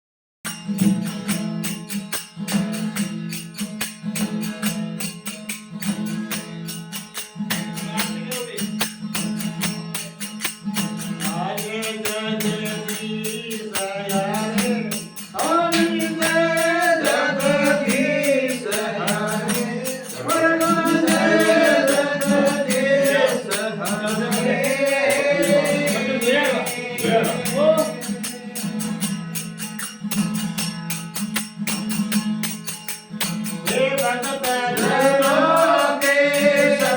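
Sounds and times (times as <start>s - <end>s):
metallic jingling percussion: 0.5s - 36.9s
man singing: 11.2s - 29.1s, 33.6s - 36.9s.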